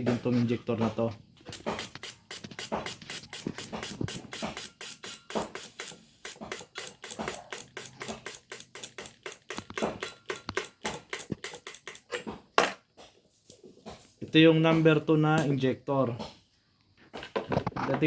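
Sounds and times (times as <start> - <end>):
fuel injector clicking rapidly: 1.5 - 12.2.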